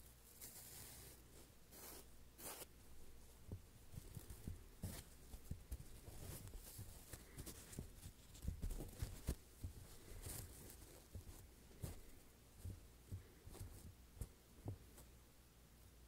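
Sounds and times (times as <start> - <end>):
scratchy brushes: 0.0 - 14.3
soft thumps of foam blocks: 3.3 - 15.2.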